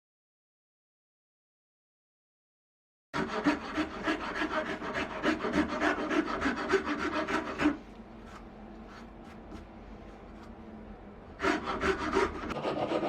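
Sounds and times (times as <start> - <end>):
hand tool strokes on wood: 11.4 - 13.0.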